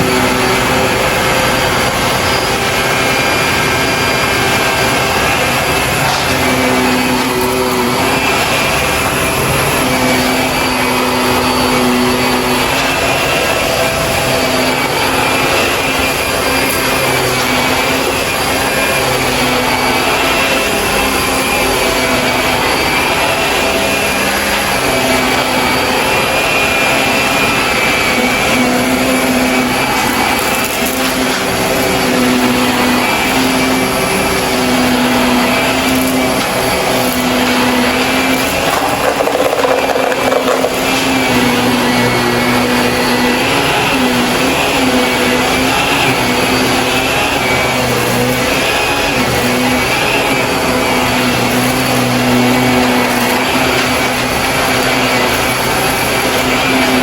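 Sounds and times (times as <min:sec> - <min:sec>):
debris crunching in vacuum: 0:00.0 - 0:43.5
vacuum cleaner running: 0:00.0 - 0:57.0.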